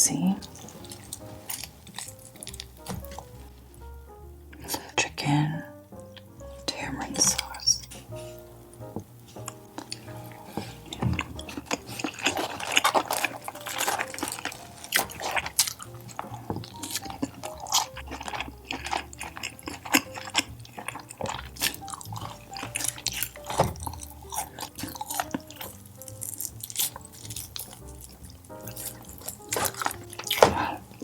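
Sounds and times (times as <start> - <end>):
chewing and wet mouth sounds: 0.0 - 31.0.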